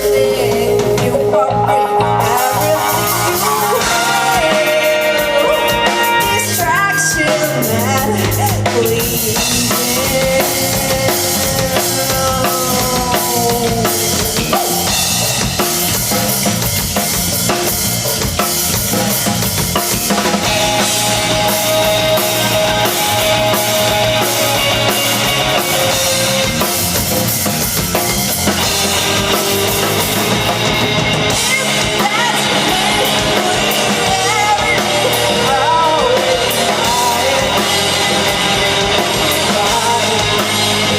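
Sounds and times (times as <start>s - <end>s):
rock band playing: 0.0s - 40.9s
bass drum and snare: 7.5s - 40.9s
bending melodic line: 10.2s - 40.9s.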